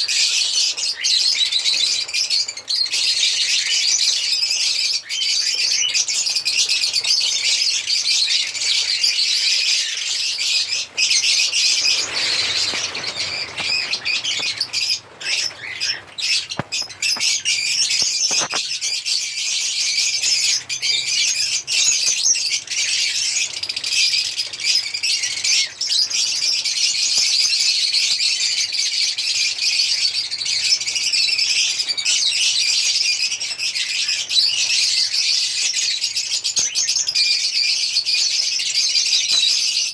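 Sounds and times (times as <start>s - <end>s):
lovebirds chirping and squawking: 0.0s - 27.6s.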